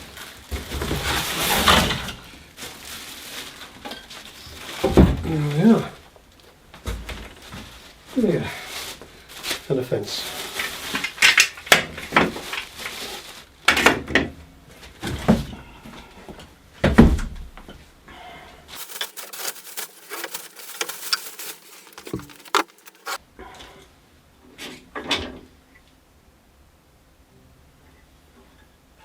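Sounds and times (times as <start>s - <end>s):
packaging rustling: 18.8s - 23.2s
parts knocking and thudding: 18.8s - 23.2s.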